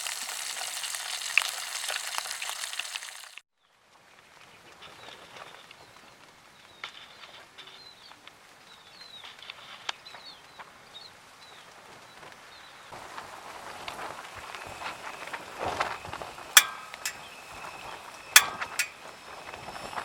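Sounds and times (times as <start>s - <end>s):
faint outdoor ambience: 3.6s - 20.0s
sharp clicks: 16.6s - 17.2s, 18.4s - 19.0s.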